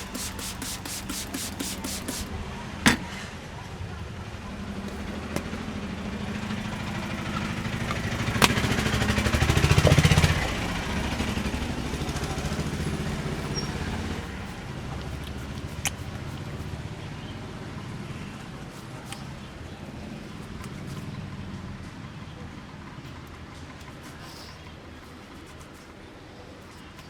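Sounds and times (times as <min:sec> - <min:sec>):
vehicle engine running: 0:00.0 - 0:18.3.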